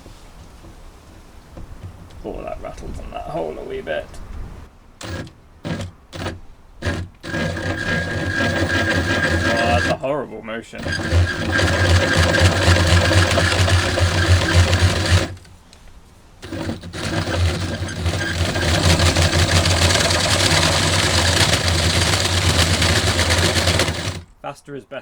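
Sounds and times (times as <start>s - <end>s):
hole saw rattling on board: 0.0s - 2.2s, 5.0s - 10.2s, 10.8s - 15.6s, 16.4s - 24.4s
power drill with hole saw: 5.0s - 10.0s, 10.8s - 15.5s, 16.4s - 24.3s.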